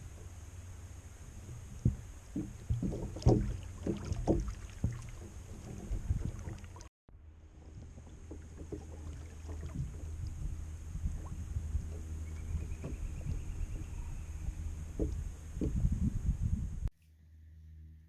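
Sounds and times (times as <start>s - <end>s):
steady low rumble: 0.0s - 18.0s
paddle splashing in water: 1.0s - 15.8s
paddle knocks: 1.4s - 6.9s, 7.6s - 14.0s, 14.9s - 15.9s.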